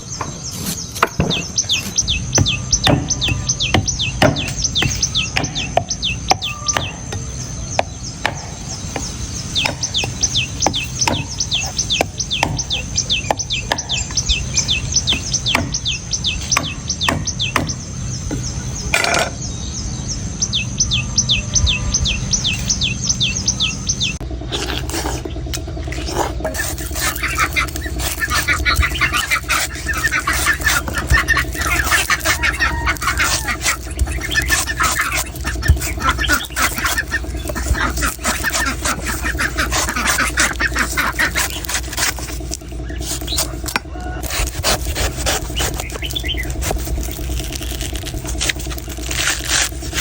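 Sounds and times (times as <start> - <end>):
chirps and clucking: 0.0 - 50.0
knife striking coconut: 2.4 - 14.0
bird falling chirps: 26.5 - 44.6.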